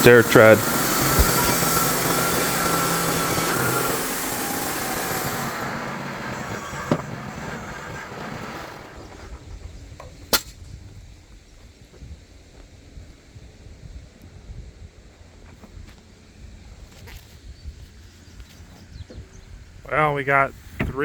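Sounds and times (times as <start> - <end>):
sawmill running: 0.0 - 9.7.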